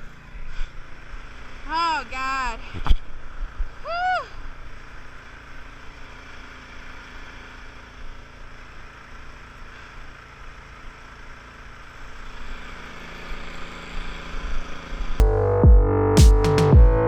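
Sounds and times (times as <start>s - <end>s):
snowblower engine running: 4.6s - 15.2s.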